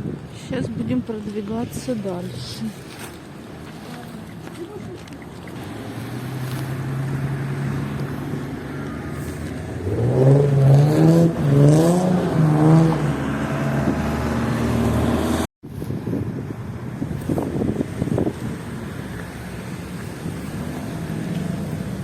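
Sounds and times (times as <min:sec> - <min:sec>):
vehicle engine revving: 0:05.6 - 0:15.5, 0:17.0 - 0:22.0.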